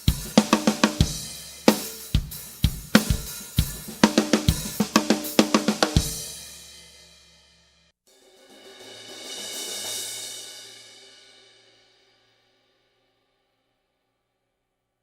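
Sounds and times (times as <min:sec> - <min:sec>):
drum kit: 0:00.0 - 0:07.3, 0:08.1 - 0:11.4.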